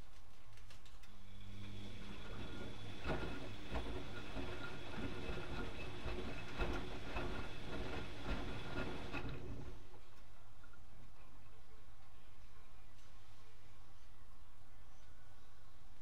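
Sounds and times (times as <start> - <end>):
washing machine running: 1.2 - 10.0
knocks and rattles: 2.4 - 9.8.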